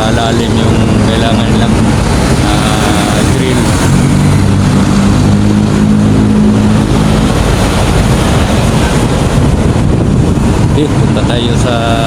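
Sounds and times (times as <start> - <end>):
engine droning: 0.0 - 12.0
loud rushing noise: 0.0 - 12.0.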